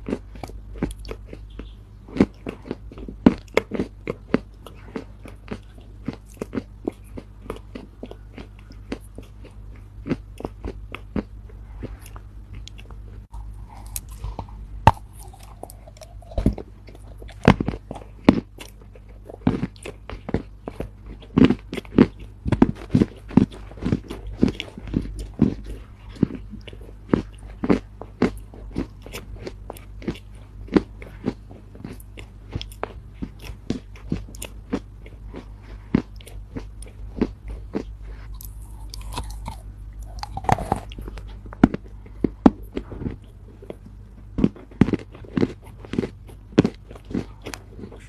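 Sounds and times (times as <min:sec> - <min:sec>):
dried earth crunching: 0:13.1 - 0:21.2.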